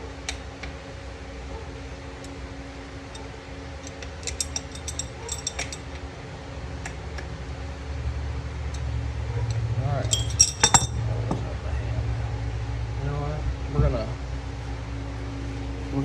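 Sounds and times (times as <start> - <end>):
steady low hum: 0.0 - 16.0
small metal parts clinking: 3.8 - 5.9, 10.0 - 11.0.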